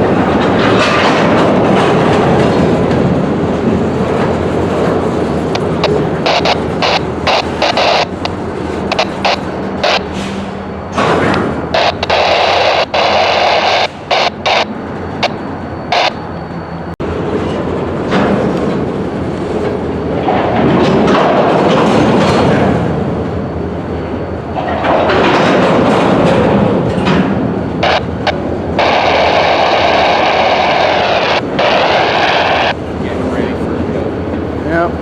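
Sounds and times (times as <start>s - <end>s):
freight cars rolling on track: 0.0s - 35.0s
sharp clicks: 5.5s - 10.1s.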